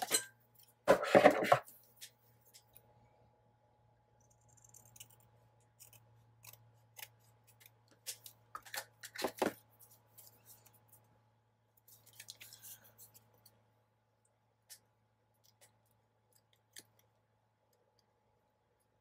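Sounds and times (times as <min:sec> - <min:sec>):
scissors snipping paper: 0:04.2 - 0:10.7.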